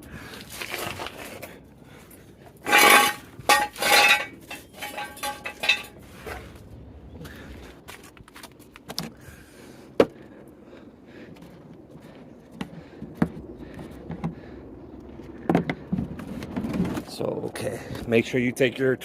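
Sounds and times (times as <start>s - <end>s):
metal tools clinking and knocking: 2.6s - 6.0s.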